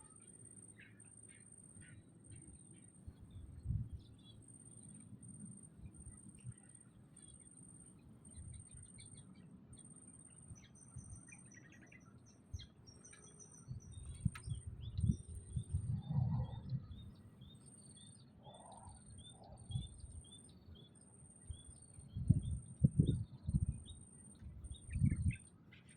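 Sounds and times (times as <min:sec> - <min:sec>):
small songbirds chirping: 0:00.0 - 0:25.9
low rumbling noise: 0:13.9 - 0:17.2.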